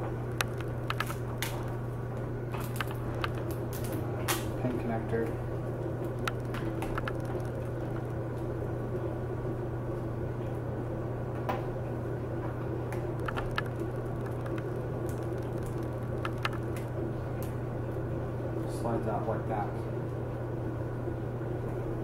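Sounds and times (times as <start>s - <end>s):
low electrical hum: 0.0s - 22.0s
faint clicks and taps: 0.3s - 1.7s, 2.5s - 3.9s, 6.0s - 8.2s, 12.9s - 17.6s.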